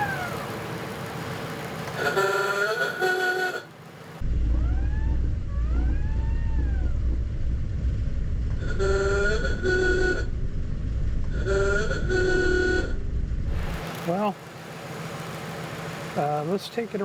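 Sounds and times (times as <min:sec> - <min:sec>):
ahooga car horn honk: 0:02.0 - 0:03.7, 0:08.6 - 0:10.4, 0:11.4 - 0:13.1
car engine low rumble: 0:03.8 - 0:17.0
wolf whistle horn: 0:08.6 - 0:10.3, 0:11.4 - 0:13.0.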